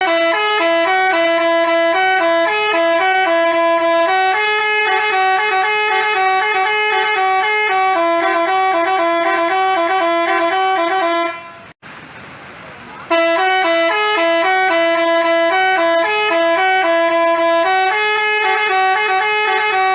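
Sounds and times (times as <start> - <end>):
bus horn playing a tune: 0.0 - 11.8, 13.1 - 19.9.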